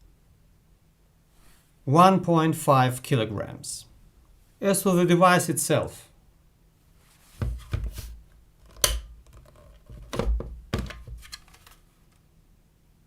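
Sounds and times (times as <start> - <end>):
plastic parts clicking and knocking: 8.6 - 11.8.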